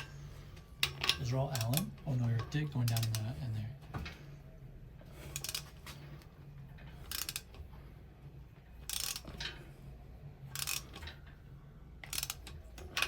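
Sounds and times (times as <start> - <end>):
low steady hum: 0.0 - 13.0
socket ratchet clicking: 7.1 - 7.5, 8.9 - 9.3, 10.5 - 11.1, 12.0 - 13.0.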